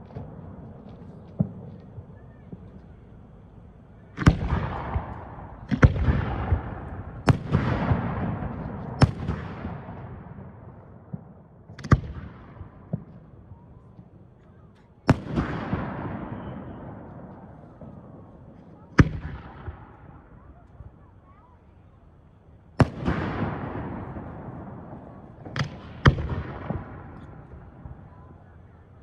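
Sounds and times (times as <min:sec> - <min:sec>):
fireworks bursting: 0:00.0 - 0:13.3, 0:22.8 - 0:28.9.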